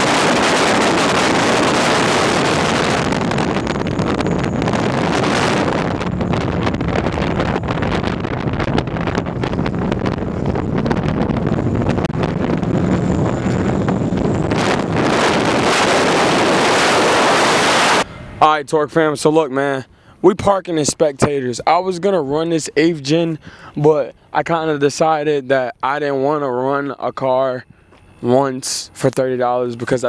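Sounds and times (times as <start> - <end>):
wind buffeting microphone: 0.0 - 19.2
vehicle low hum: 0.0 - 30.0.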